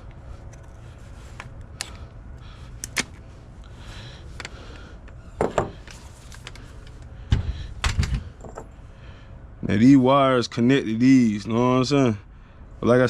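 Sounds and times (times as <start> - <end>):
small clicks and knocks of parts: 0.0 - 3.2, 4.4 - 7.1.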